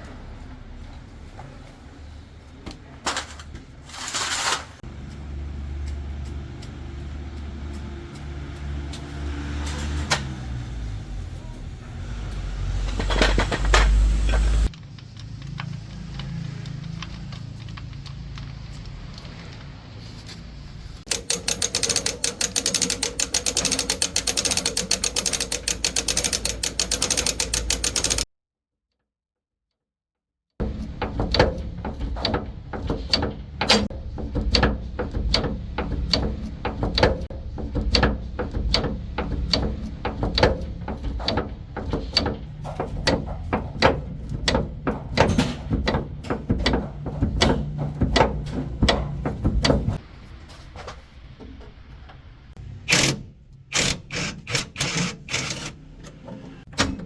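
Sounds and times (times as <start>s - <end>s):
fast mechanical rattle: 21.0s - 28.3s, 30.6s - 50.0s, 52.6s - 57.0s
metallic clicks and knocks: 21.0s - 28.3s, 30.6s - 50.0s.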